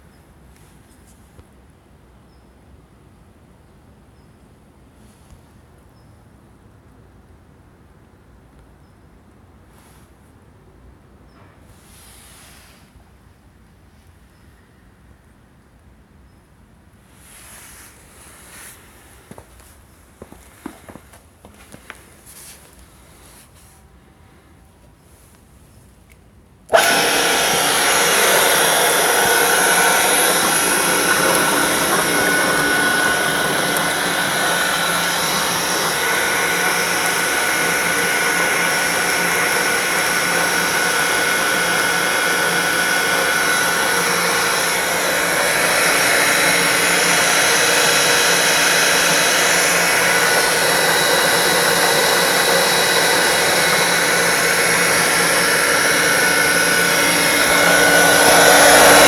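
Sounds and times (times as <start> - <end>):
steady whine: 26.7 - 59.0
water pump running: 26.7 - 59.0.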